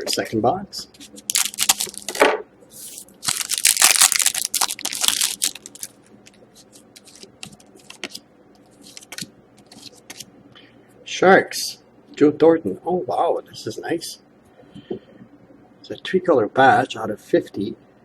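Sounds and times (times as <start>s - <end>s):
cards clicking and rustling: 1.0s - 2.2s, 2.8s - 6.0s, 6.6s - 8.2s, 8.8s - 10.3s
card pack wrapper tearing and crinkling: 1.2s - 2.2s, 2.8s - 8.2s.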